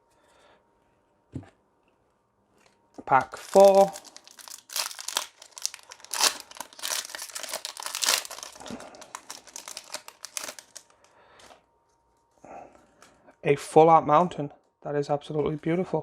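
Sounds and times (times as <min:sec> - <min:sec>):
foil wrapper tearing and crinkling: 0:03.3 - 0:11.0.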